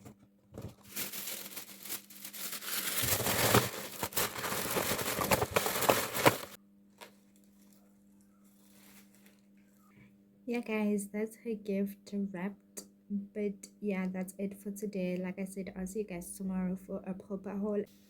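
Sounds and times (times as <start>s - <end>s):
wrapping paper crinkling: 0.6s - 9.5s.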